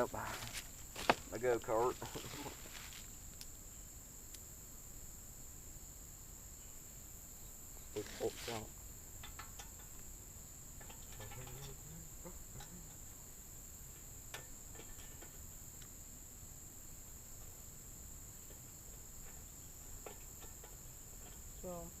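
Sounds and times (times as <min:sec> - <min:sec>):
crickets chirring: 0:00.0 - 0:22.0
faint clicks and knocks: 0:09.2 - 0:10.1, 0:10.8 - 0:11.8.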